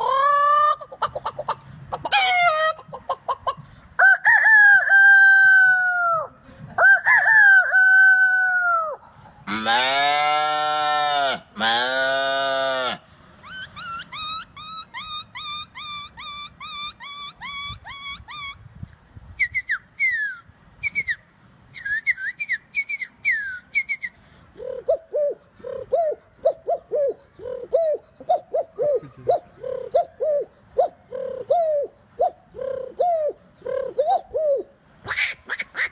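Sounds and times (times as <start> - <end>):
man imitating cow call: 9.5 - 13.0
dove-like cooing: 24.6 - 34.8.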